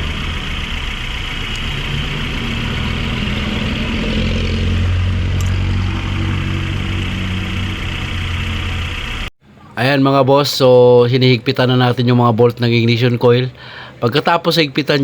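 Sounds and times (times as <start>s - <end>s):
car engine idling: 0.0s - 9.3s.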